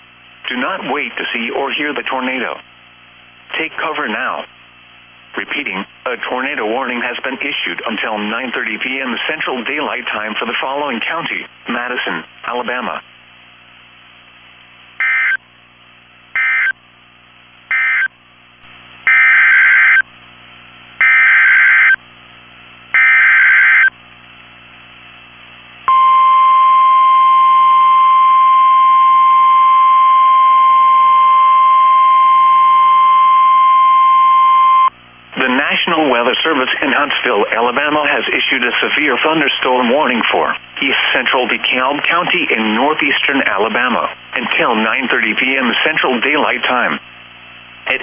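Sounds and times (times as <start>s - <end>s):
steady warning alarm tone: 15.0s - 15.4s, 16.4s - 16.8s, 17.7s - 18.1s, 19.1s - 20.0s, 21.0s - 22.0s, 22.9s - 23.9s, 25.9s - 34.9s.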